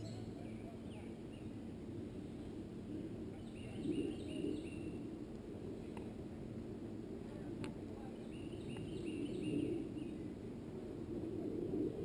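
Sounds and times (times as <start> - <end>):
songbird chirping: 0.0 - 5.1, 7.6 - 10.4
low outdoor rumble: 0.0 - 12.0.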